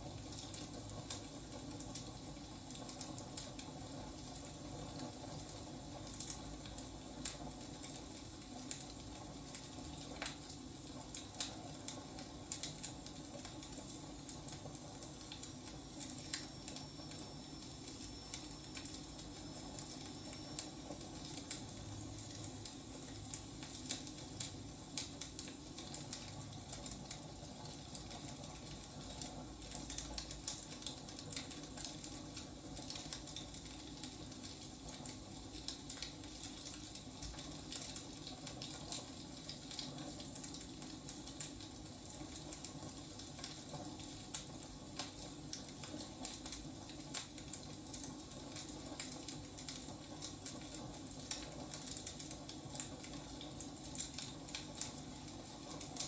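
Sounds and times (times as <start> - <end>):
logs crackling and popping: 0.3 - 56.0.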